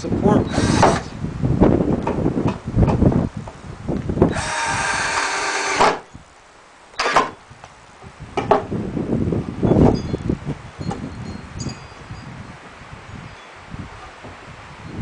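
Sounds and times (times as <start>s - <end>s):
power drill driving screw: 0.5s - 1.1s, 4.3s - 6.0s, 7.0s - 7.4s
wooden boards knocking: 8.4s - 8.7s.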